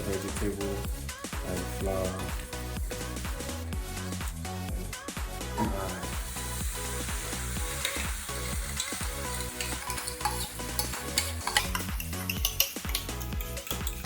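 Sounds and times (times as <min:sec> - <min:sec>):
music with steady beat: 0:00.0 - 0:14.0
batter sizzling in oil: 0:05.4 - 0:14.0.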